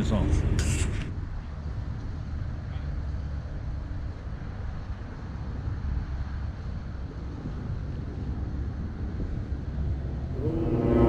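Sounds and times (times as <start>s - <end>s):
boat engine rumbling: 10.3s - 11.0s.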